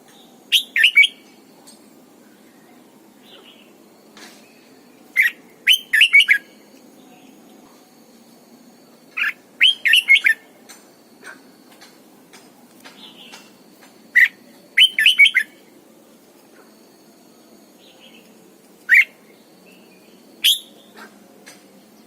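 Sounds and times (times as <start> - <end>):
bird chirping: 0.1 - 1.4, 4.4 - 7.5, 9.1 - 10.5, 12.9 - 15.6, 17.8 - 22.0.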